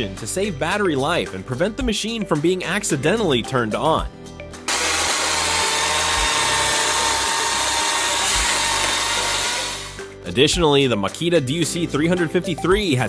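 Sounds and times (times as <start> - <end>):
electric chainsaw running: 4.7 - 10.0.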